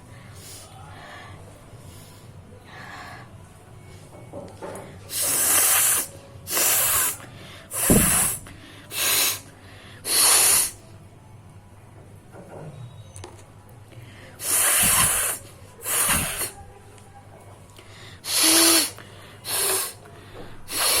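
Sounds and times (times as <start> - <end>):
person blowing nose: 5.1 - 9.4, 10.0 - 10.8, 14.4 - 16.6, 18.2 - 20.0, 20.7 - 21.0.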